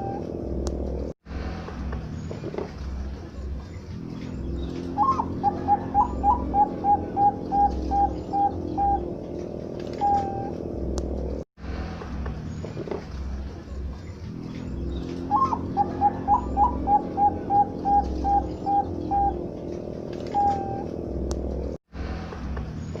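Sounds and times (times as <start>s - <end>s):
dove cooing: 5.0s - 9.2s, 9.8s - 10.6s, 15.3s - 21.0s.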